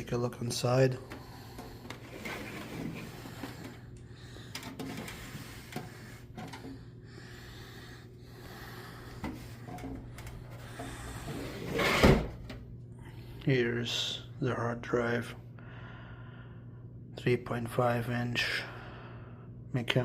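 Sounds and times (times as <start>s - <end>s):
steady low hum: 0.0s - 20.0s
computer case panels scraping: 1.9s - 3.8s, 4.6s - 6.6s, 11.2s - 12.6s.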